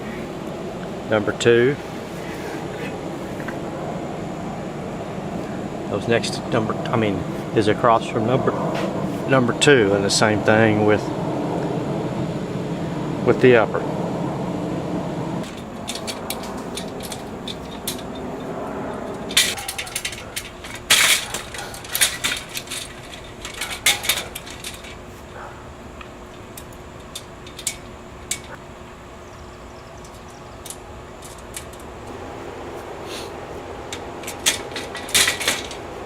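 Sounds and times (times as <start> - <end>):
metal tool parts clinking: 15.4 - 18.5, 19.2 - 25.0, 26.6 - 28.6, 33.9 - 35.8.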